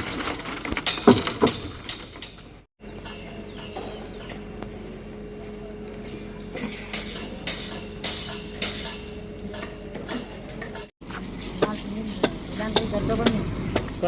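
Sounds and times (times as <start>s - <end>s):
steady mechanical hum: 2.8s - 14.0s.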